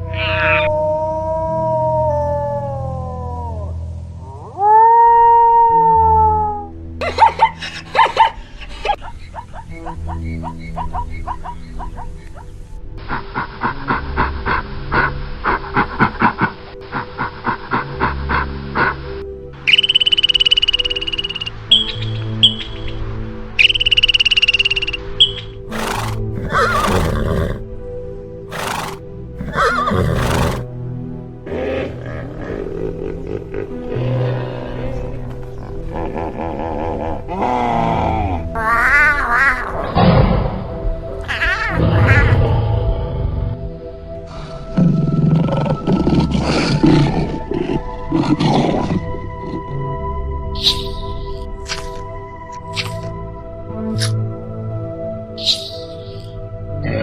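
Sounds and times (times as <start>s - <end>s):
background music: 0.0s - 57.0s
big cat roaring: 25.7s - 27.6s, 28.5s - 30.7s, 31.5s - 35.2s, 39.7s - 44.0s, 44.6s - 49.8s
horse whinnying: 25.7s - 27.6s, 28.5s - 30.7s, 38.6s - 43.3s.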